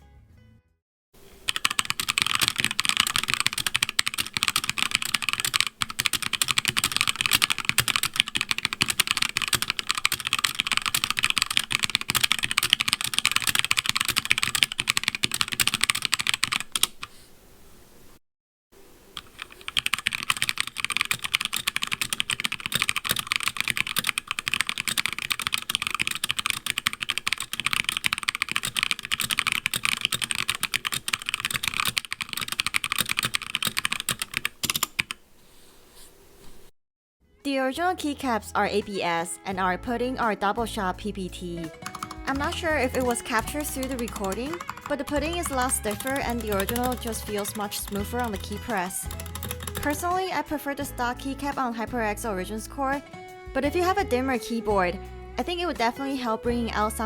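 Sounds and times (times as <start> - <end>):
mechanical keyboard typing: 1.5 - 17.1, 19.2 - 35.2, 41.6 - 50.2.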